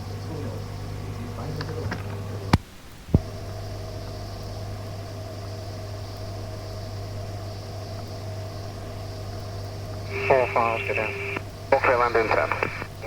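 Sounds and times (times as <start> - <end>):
radio hiss and hum: 0.0 - 3.6, 9.4 - 13.0
radio transmitter clicks: 10.0 - 13.0.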